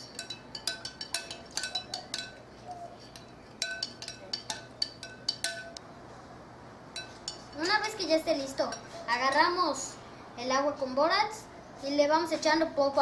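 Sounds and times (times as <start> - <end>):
spoon clinking against bowl: 0.0 - 5.8, 6.9 - 7.9.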